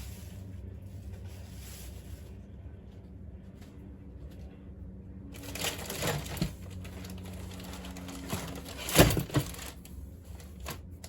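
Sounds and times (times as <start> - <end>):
plastic packaging rustling: 5.4 - 10.8.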